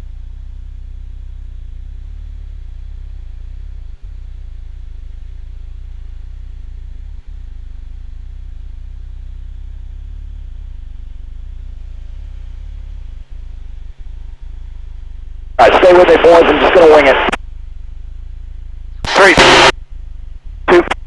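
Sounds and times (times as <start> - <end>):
aircraft engine drone: 10.6 - 19.7.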